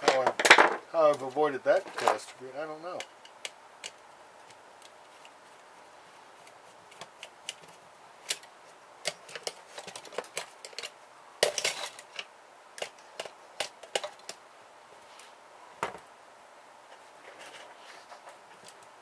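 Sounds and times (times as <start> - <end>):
metal parts and tools clinking: 8.2 - 14.4.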